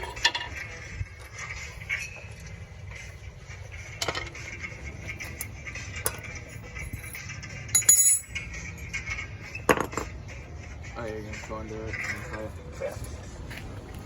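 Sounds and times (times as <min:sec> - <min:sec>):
metal hand tools clinking: 0:06.1 - 0:08.5.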